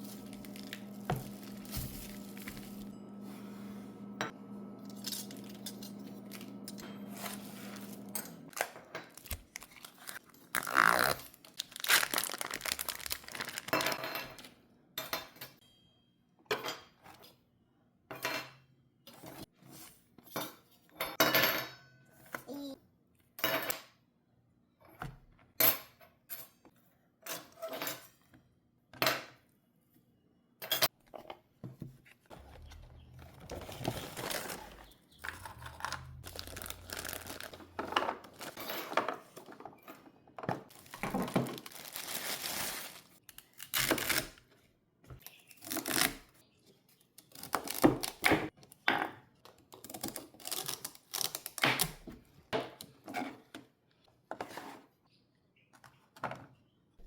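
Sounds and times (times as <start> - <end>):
rustling and crinkling of bags: 0.0 - 2.9, 7.1 - 14.5, 32.3 - 39.6, 40.6 - 43.2
hard items knocking in plastic box: 40.5 - 41.8.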